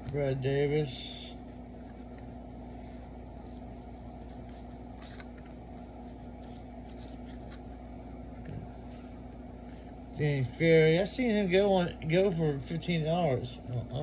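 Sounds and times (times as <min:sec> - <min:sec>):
steady background hum: 0:00.0 - 0:14.0
cards sliding and flipping: 0:01.8 - 0:09.1.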